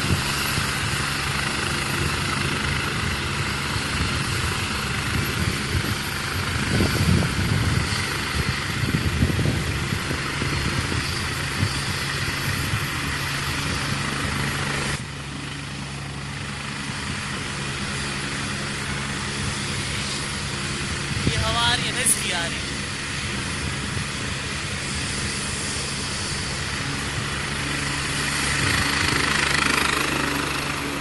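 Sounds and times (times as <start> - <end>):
helicopter engine and rotor drone: 0.0 - 31.0
wind buffeting microphone: 1.9 - 14.6, 23.1 - 29.8.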